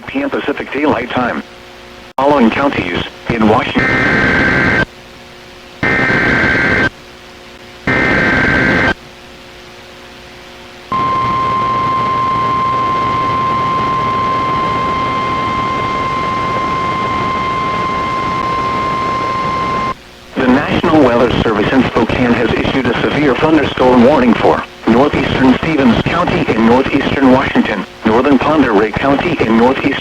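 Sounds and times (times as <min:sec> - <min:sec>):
radio hiss: 0:00.0 - 0:01.6, 0:02.2 - 0:04.9, 0:05.8 - 0:06.9, 0:07.9 - 0:09.0, 0:10.9 - 0:30.0
data bursts: 0:03.8 - 0:04.8, 0:05.8 - 0:06.9, 0:07.9 - 0:09.0
steady warning alarm tone: 0:03.8 - 0:04.8, 0:05.8 - 0:06.9, 0:07.9 - 0:09.0, 0:10.9 - 0:20.6.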